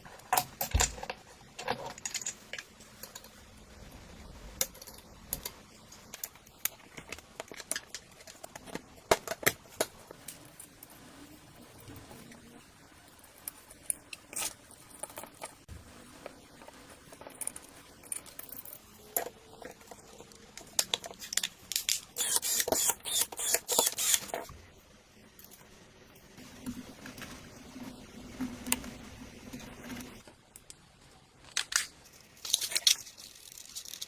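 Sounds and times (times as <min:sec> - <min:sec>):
small clicks and knocks: 0:00.1 - 0:03.4.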